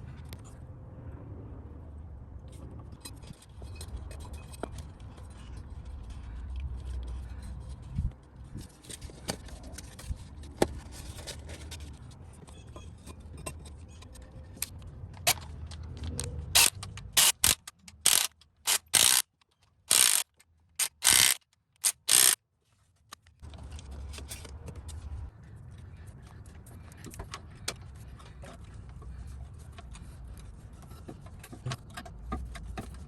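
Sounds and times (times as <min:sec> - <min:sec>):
ratchet wrench clicking: 0:16.6 - 0:22.4.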